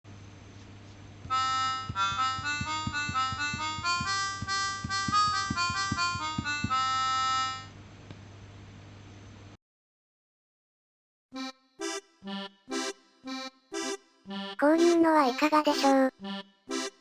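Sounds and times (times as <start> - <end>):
synthesised accordion: 1.3 - 7.7, 11.4 - 17.0.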